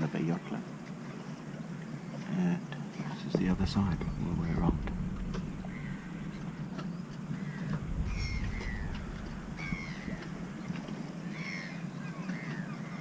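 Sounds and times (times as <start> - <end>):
wind rumble on microphone: 3.4 - 11.7
birds calling harshly: 7.4 - 10.7.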